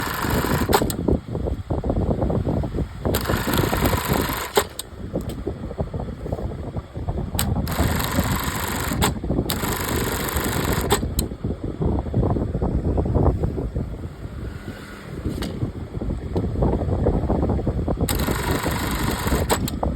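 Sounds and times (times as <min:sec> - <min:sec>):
sewing machine running: 0:00.0 - 0:01.0, 0:03.1 - 0:04.8, 0:07.4 - 0:11.2, 0:18.1 - 0:19.8
sharp clicks: 0:00.1 - 0:01.0, 0:03.1 - 0:05.4, 0:07.4 - 0:11.3, 0:18.0 - 0:19.9.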